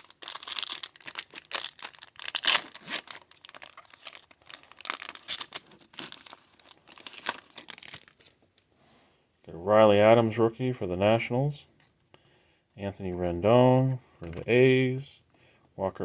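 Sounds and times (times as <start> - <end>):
foil pack tearing and crinkling: 0.0 - 8.3.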